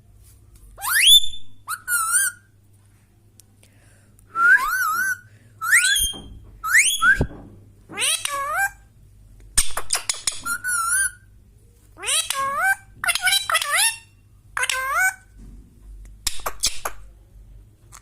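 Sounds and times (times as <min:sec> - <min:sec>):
parrot whistling: 0:00.8 - 0:02.5, 0:04.4 - 0:07.3.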